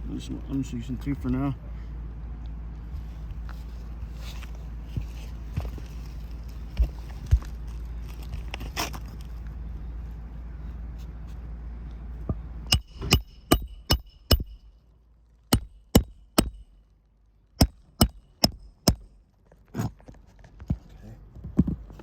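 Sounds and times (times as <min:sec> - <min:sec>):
hammer striking roofing nails: 0:12.7 - 0:14.7, 0:15.5 - 0:16.8, 0:17.6 - 0:19.2.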